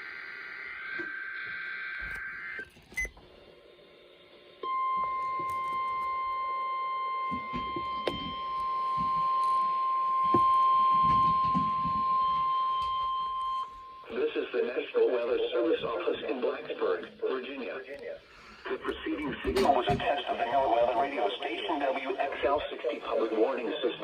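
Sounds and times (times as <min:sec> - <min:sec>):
steady alarm tone: 0:04.6 - 0:14.1.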